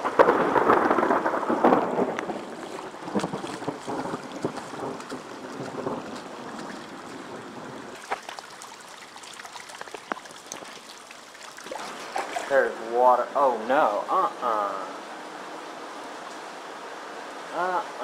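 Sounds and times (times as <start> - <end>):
heavy rain falling: 0.0 - 18.0
water running: 2.3 - 14.0
drips and taps: 8.0 - 12.5.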